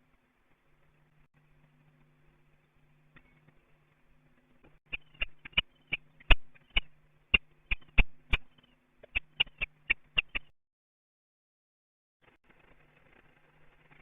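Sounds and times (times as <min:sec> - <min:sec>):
faint steady hum: 0:00.0 - 0:10.5
sharp short clicks: 0:04.9 - 0:10.5.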